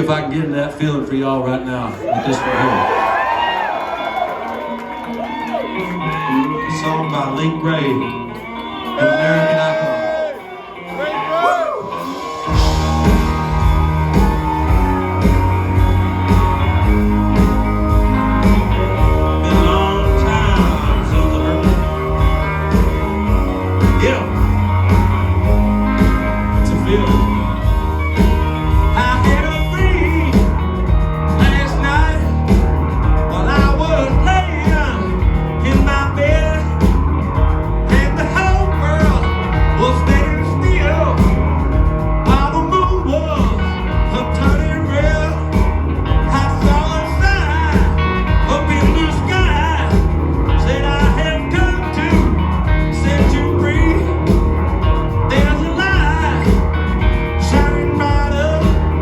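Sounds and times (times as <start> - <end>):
live rock band playing: 2.8 - 59.0
person singing: 8.8 - 41.5, 42.2 - 59.0.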